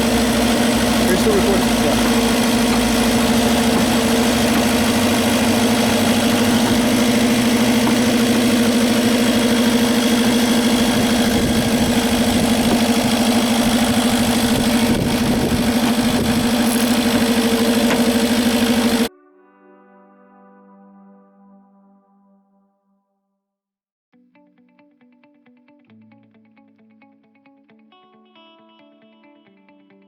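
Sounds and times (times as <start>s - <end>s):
car engine idling: 0.0s - 19.1s.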